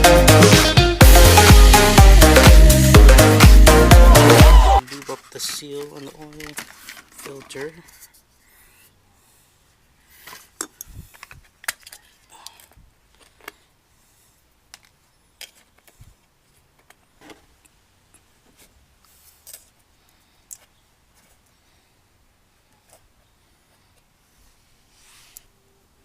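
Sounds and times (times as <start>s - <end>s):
small hard objects clinking: 4.8s - 7.8s.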